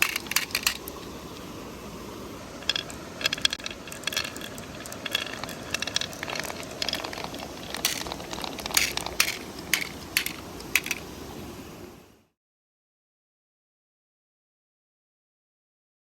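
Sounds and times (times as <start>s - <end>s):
marbles clicking on wooden run: 0.0s - 1.0s, 2.6s - 11.0s
river murmuring: 0.0s - 11.6s.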